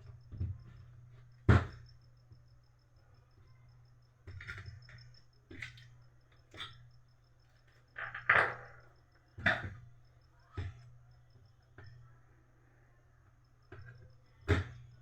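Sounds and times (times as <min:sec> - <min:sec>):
plastic parts knocking and clattering: 0:04.2 - 0:06.8, 0:07.6 - 0:09.9.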